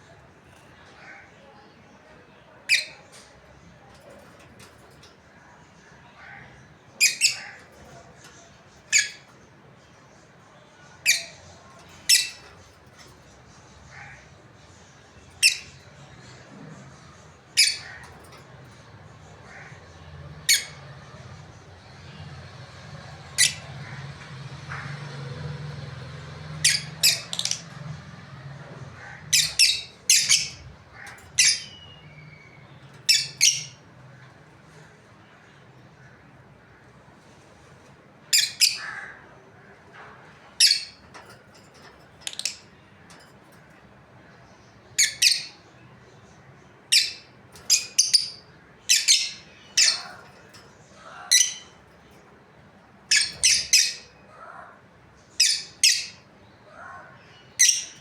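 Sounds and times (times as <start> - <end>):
lovebirds squawking: 4.5 - 9.6, 10.9 - 21.6, 23.2 - 28.0, 28.6 - 34.9, 37.6 - 39.8, 40.5 - 43.2, 44.8 - 45.7, 46.8 - 54.8, 55.4 - 58.0.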